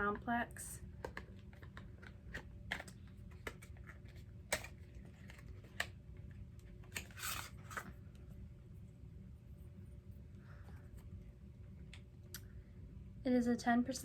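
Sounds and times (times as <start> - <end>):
packaging clicks and taps: 1.0 - 6.0
packaging rustle: 6.7 - 8.0.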